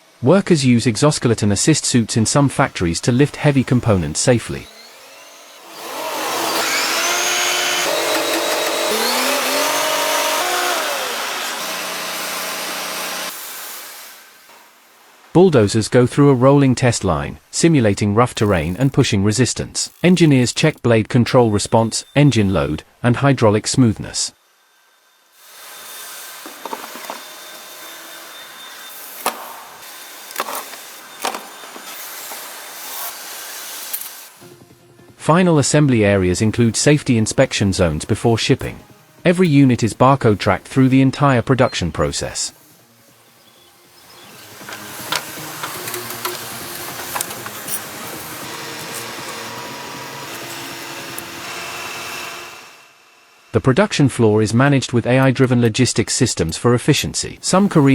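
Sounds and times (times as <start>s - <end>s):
factory machinery whirring: 0.0s - 53.6s, 57.4s - 57.9s
whining motor tones: 2.6s - 14.7s, 19.8s - 23.0s, 23.6s - 35.3s, 36.2s - 53.6s.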